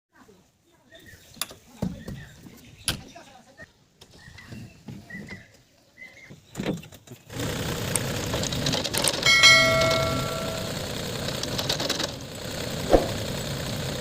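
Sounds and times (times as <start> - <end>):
engine running steadily: 7.3 - 14.0
brief ringing tone: 9.3 - 11.0.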